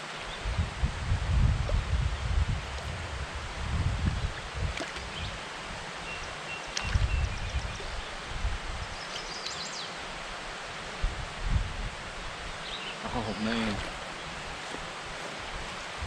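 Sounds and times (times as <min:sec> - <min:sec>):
wind gusting on microphone: 0:00.2 - 0:05.9, 0:06.8 - 0:09.0, 0:10.8 - 0:16.0.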